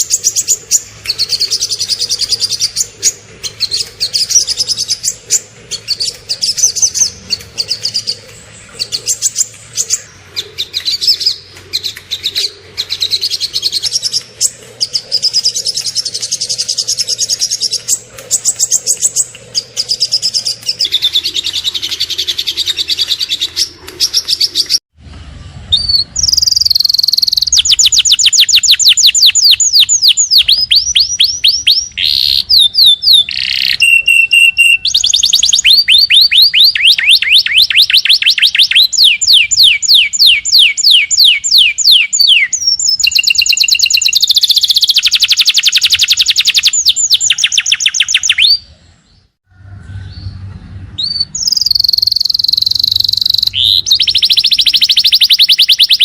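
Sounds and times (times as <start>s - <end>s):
bird fast repeated trill: 0.0s - 24.8s, 25.8s - 48.6s, 51.2s - 56.0s
songbirds chirping and trilling: 0.0s - 56.0s.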